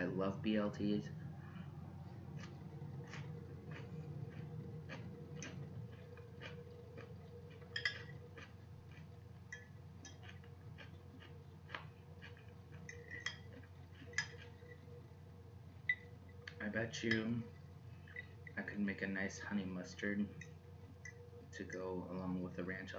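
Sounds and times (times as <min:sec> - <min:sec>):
chewing: 0:01.2 - 0:18.7.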